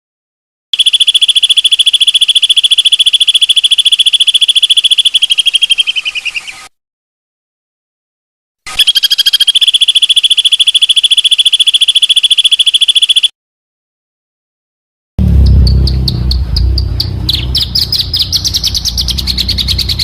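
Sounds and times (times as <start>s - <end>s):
high rapid bird trill: 0.8s - 6.7s, 8.7s - 13.3s, 15.4s - 20.0s.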